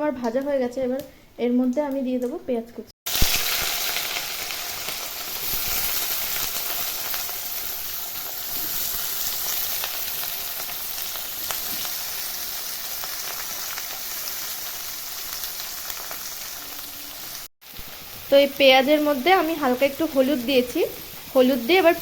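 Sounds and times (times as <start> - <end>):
onion sizzling in hot oil: 3.1 - 22.0.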